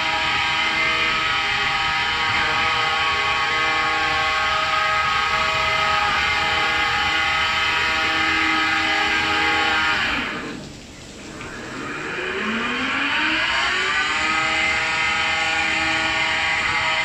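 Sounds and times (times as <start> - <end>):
car wash brushes droning: 0.0 - 17.0.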